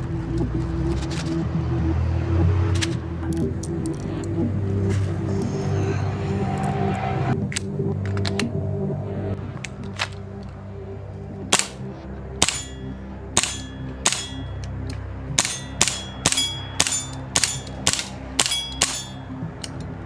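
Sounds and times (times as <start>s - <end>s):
airsoft pistol shots: 11.5s - 12.8s, 13.4s - 14.6s, 15.4s - 19.2s.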